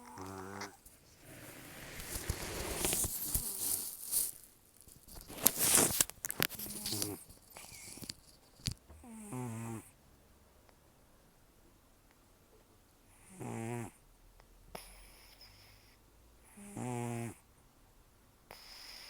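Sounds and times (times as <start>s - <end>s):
cat snoring: 0.0s - 3.8s, 9.0s - 9.9s, 13.1s - 14.0s, 14.7s - 17.4s, 18.5s - 19.0s.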